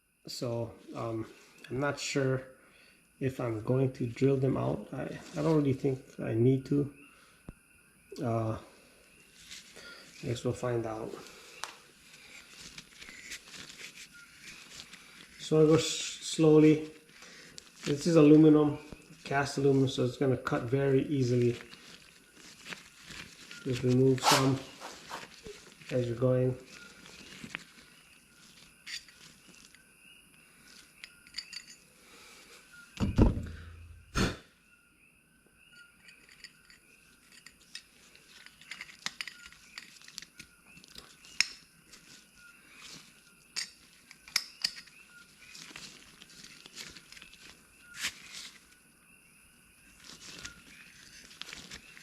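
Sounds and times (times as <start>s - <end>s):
small metallic clicks and clinks: 28.8s - 29.8s, 30.9s - 31.9s, 35.7s - 41.7s, 43.5s - 45.0s
louder knocks: 33.0s - 33.7s.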